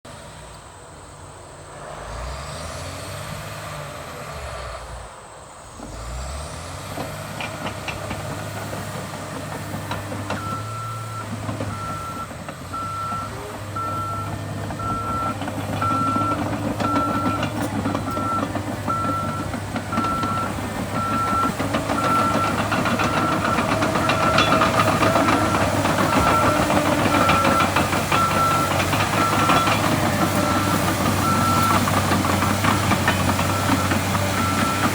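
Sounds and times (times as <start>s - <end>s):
bulldozer diesel engine running: 5.0s - 34.9s
backup alarm beeping: 10.3s - 32.5s.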